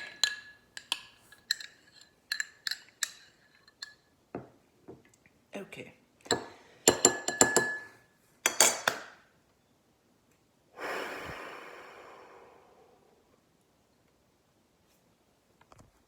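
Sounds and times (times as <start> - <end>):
clinks against a drinking glass: 6.3 - 9.0
breathy sigh: 10.8 - 13.3.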